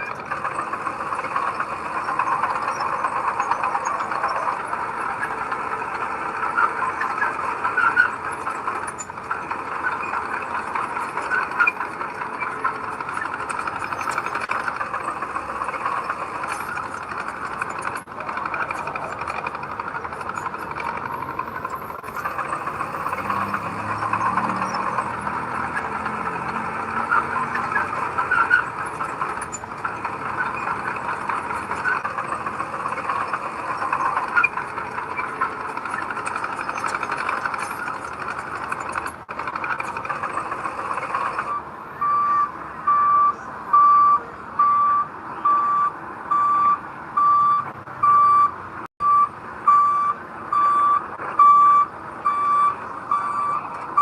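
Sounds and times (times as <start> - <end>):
earthmoving machinery engine rumbling: 0.0 - 54.0
reversing alarm beeping: 40.0 - 54.0.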